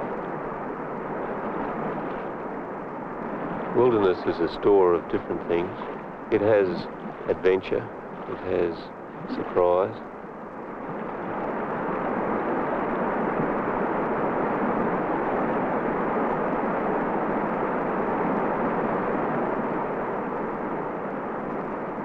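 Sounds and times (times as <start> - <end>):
whitewater rapids rushing: 3.5 - 9.9.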